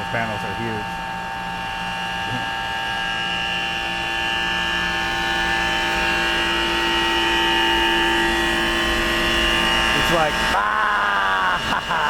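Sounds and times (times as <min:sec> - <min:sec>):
compressor humming: 0:00.0 - 0:12.0.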